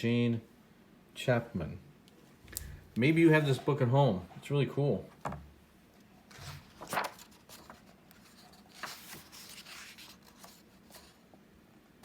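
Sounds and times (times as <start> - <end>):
paper pages rustling: 6.3 - 11.2.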